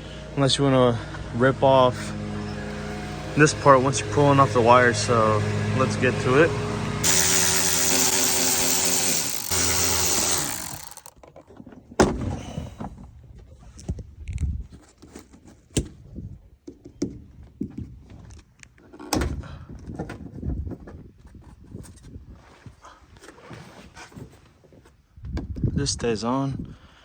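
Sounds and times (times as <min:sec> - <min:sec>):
power tool motor running: 0:02.0 - 0:11.1.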